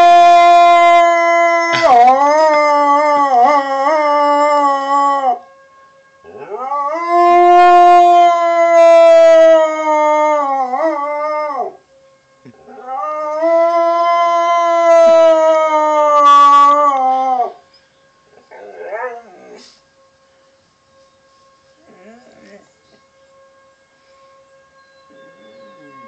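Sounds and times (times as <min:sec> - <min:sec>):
dog howling: 0:00.0 - 0:05.4, 0:06.3 - 0:11.8, 0:12.5 - 0:17.7, 0:18.3 - 0:19.6, 0:21.8 - 0:22.7
faint steady siren tone: 0:00.0 - 0:26.0.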